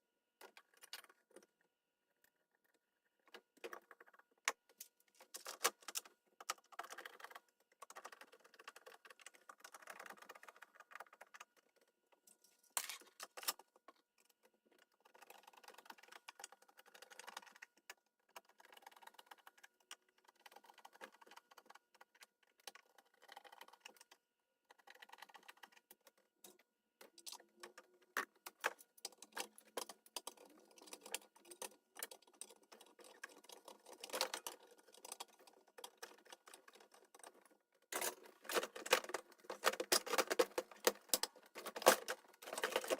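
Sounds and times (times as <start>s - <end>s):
small hard parts clicking and rattling: 0.4s - 42.9s.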